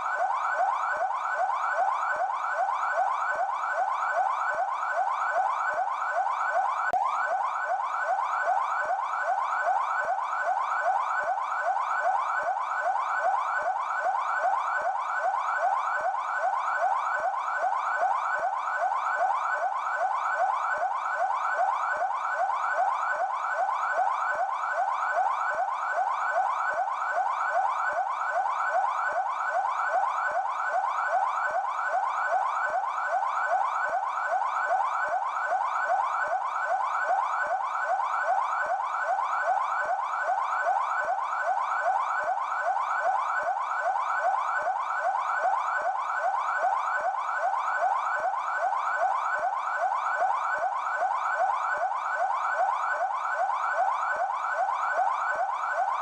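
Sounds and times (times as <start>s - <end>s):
police siren yelp: 0.0s - 56.0s.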